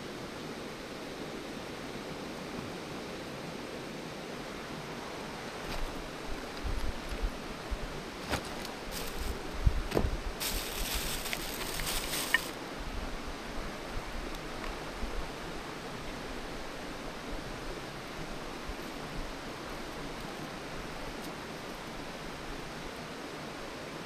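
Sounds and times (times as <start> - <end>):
campfire rushing noise: 5.5 - 12.6
fire popping: 8.2 - 12.6
high hiss: 10.3 - 12.6.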